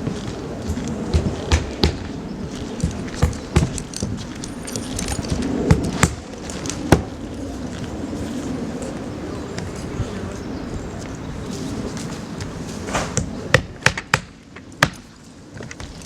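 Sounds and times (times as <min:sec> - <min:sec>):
nailing on wooden roof deck: 0:00.0 - 0:02.2, 0:02.8 - 0:04.5, 0:12.9 - 0:15.1.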